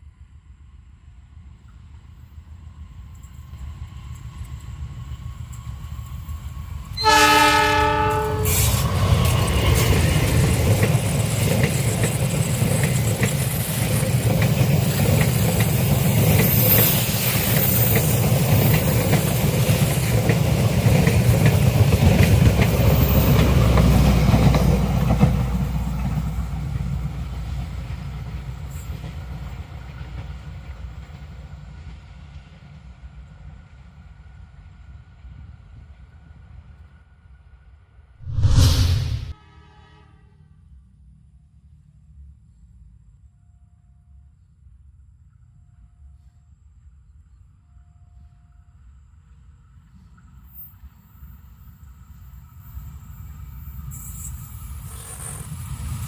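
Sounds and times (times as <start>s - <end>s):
train horn: 7.0s - 8.9s, 39.3s - 40.8s.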